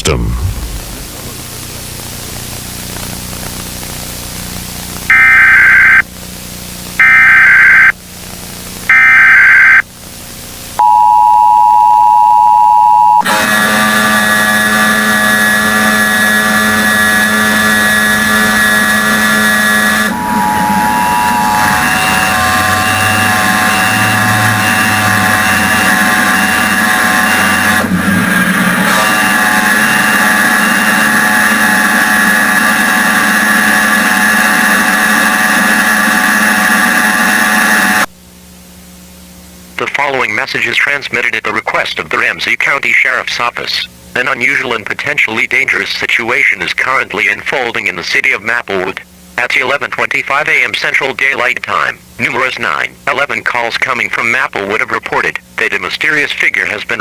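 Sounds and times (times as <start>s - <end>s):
jumble of overlapping tones and noise: 0.0s - 11.2s, 38.8s - 57.0s
screeching data bursts: 5.1s - 6.0s, 7.0s - 7.9s, 8.9s - 9.8s, 20.1s - 26.4s
two-tone attention signal: 5.1s - 6.0s, 7.0s - 7.9s, 8.9s - 9.8s, 10.8s - 13.3s, 19.9s - 25.8s.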